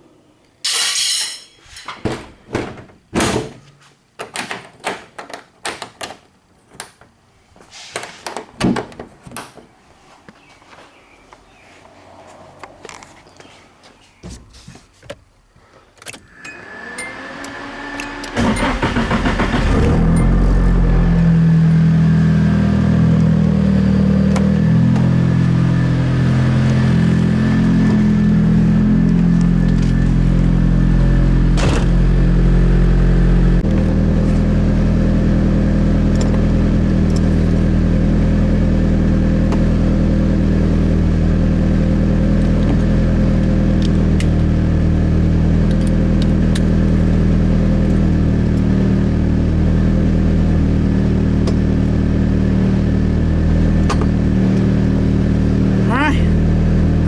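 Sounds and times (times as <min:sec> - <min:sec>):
car engine starting and idling: 0:16.2 - 0:57.0.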